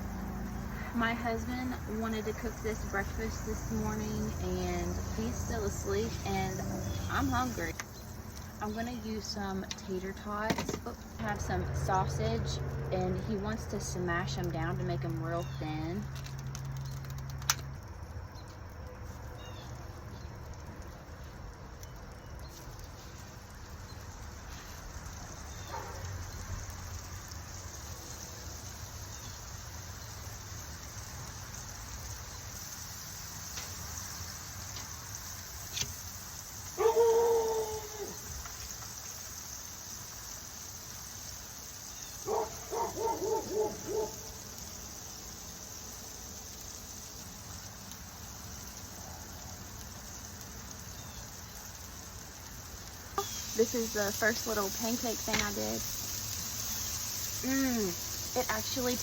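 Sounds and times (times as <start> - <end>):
high-pitched hiss: 0.0 - 14.5, 22.4 - 59.0
dog yipping: 25.6 - 26.1, 36.8 - 38.2, 42.2 - 44.4
dog whining or barking: 36.8 - 38.2, 42.3 - 44.4.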